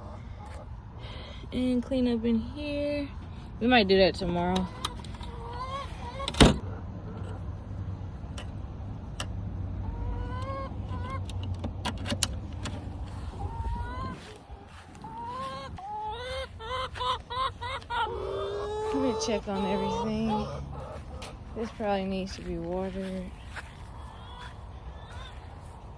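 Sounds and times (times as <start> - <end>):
hens clucking and calling: 0.0 - 0.8, 4.2 - 7.4, 9.8 - 11.4, 13.0 - 25.9.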